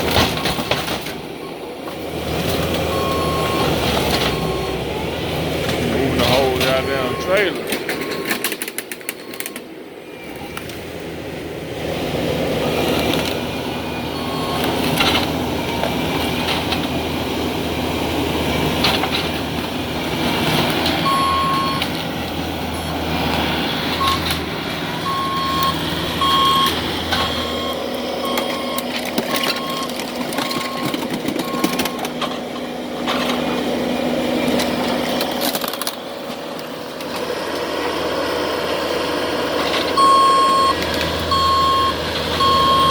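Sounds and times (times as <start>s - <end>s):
debris knocks and crashes: 0.0s - 1.3s, 28.3s - 33.7s
heavy demolition machinery running: 0.0s - 42.9s
reversing alarm beeping: 2.9s - 4.9s, 6.2s - 9.7s, 13.9s - 14.7s, 21.0s - 21.9s, 24.0s - 24.4s, 25.0s - 32.1s, 40.0s - 42.9s.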